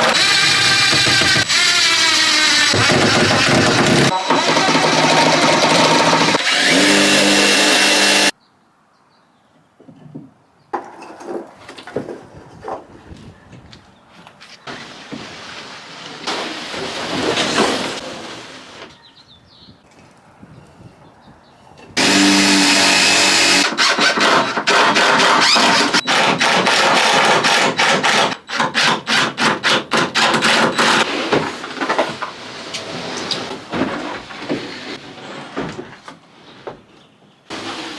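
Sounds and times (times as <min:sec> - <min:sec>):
power drill running: 0:00.0 - 0:08.3, 0:22.0 - 0:26.4.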